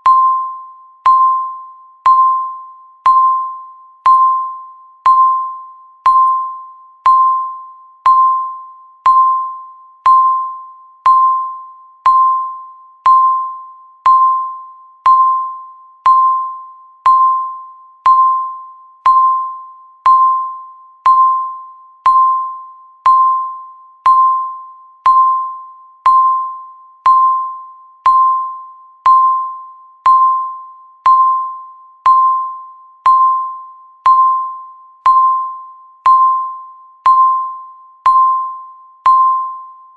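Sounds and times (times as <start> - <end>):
timer beeping: 0.0 - 39.9.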